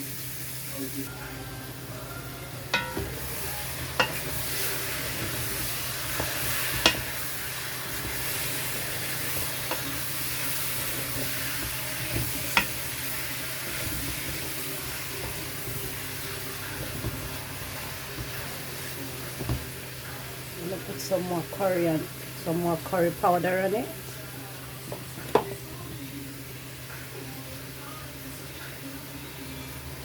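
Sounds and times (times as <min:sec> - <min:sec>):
chicken sizzling in oil: 0:00.0 - 0:30.0
utensil clicking against pot: 0:03.9 - 0:07.2, 0:10.9 - 0:12.9.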